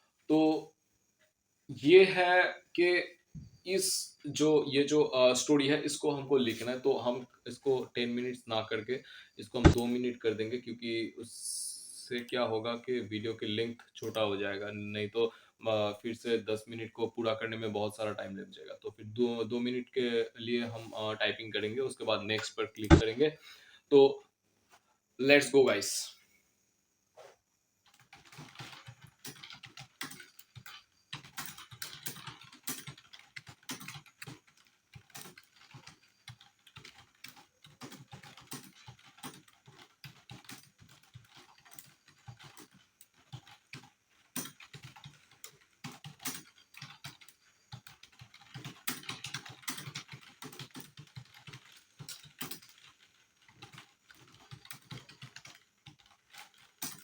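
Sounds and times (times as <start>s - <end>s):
typing on computer keyboard: 6.4s - 11.0s, 12.9s - 14.7s, 15.7s - 23.2s, 27.8s - 57.0s.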